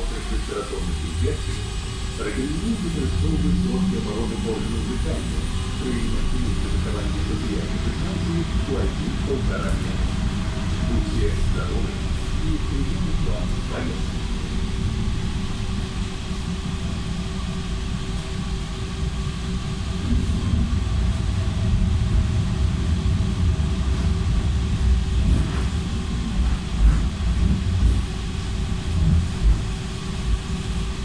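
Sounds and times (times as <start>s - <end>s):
constant hum: 0.0s - 31.0s
tram wheels rumbling on rails: 0.0s - 31.0s.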